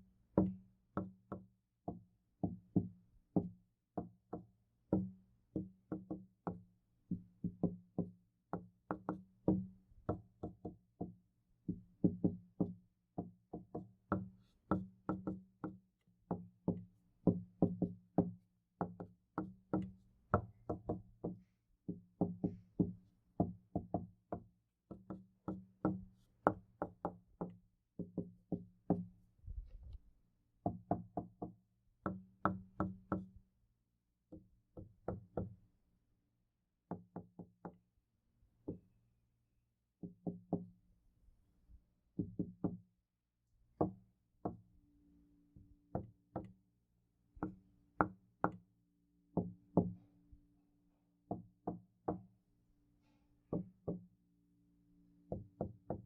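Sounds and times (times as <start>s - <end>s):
knocking on a door: 7.4s - 29.1s, 42.2s - 42.8s.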